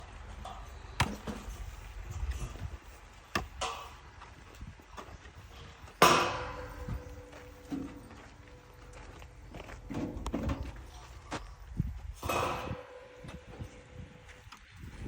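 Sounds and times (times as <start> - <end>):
metallic ring: 6.0 - 11.6, 12.2 - 14.3.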